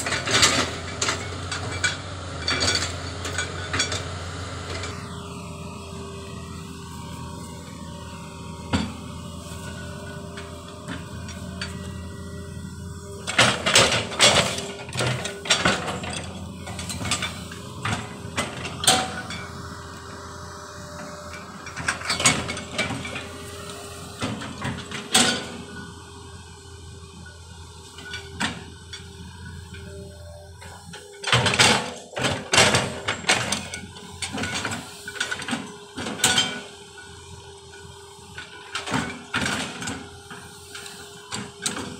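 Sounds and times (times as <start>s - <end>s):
loud metallic clanking and rattling: 0.0s - 5.0s, 13.2s - 19.6s
excavator engine running: 0.0s - 41.9s.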